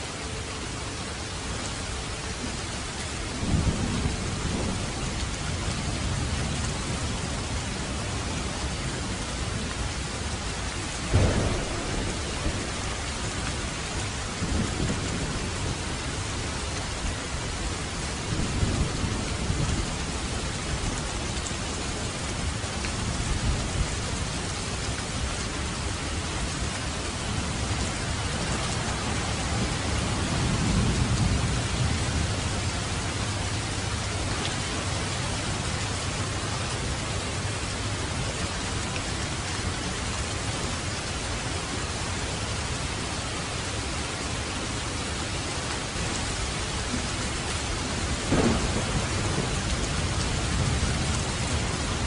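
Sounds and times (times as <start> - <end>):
heavy rain falling: 0.0 - 52.0
thunder rumbling: 3.4 - 21.4, 22.2 - 38.3, 45.9 - 52.0.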